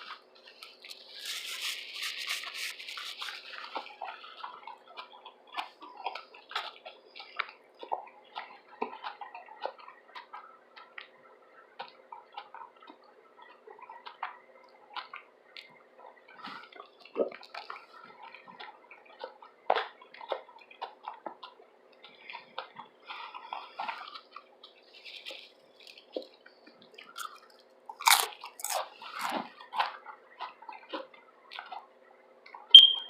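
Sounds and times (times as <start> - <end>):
chewing with wet mouth clicks: 23.8 - 31.9
crunchy bite: 27.1 - 29.5.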